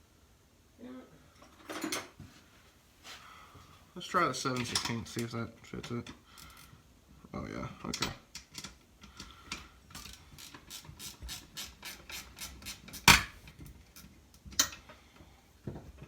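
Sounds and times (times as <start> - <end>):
ratchet wrench clicking: 9.9 - 13.2.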